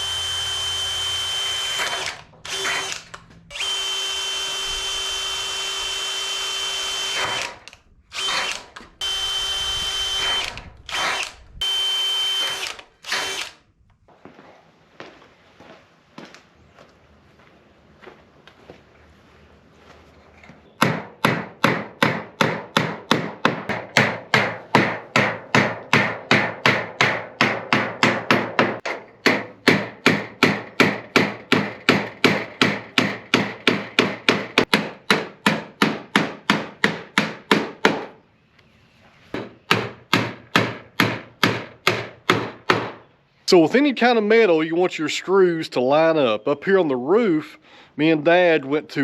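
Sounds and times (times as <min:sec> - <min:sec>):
hammering on wood: 0:20.8 - 0:38.2, 0:39.4 - 0:43.0.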